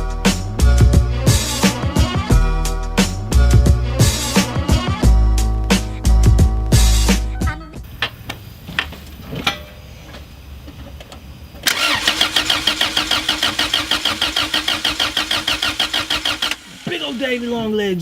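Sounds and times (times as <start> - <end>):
engine cranking on starter motor: 11.6 - 18.0.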